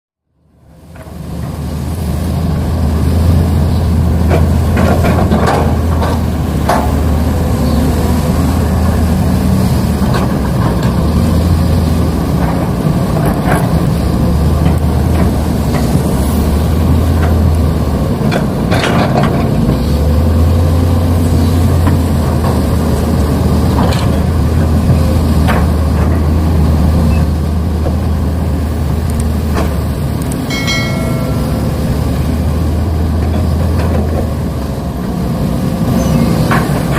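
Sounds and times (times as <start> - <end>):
low engine running: 13.4 - 36.9.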